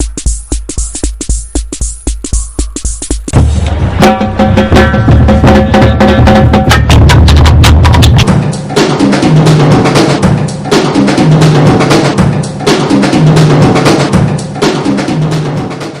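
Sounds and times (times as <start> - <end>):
pitched bass figure: 0.0 - 8.4
kick and snare drum beat: 0.0 - 16.0.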